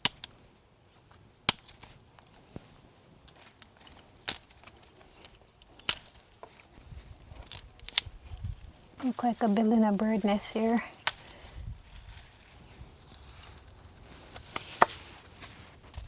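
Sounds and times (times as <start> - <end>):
dry twigs snapping: 0.0 - 0.5, 1.4 - 13.6
small bird chirping: 2.1 - 6.4, 8.4 - 14.7.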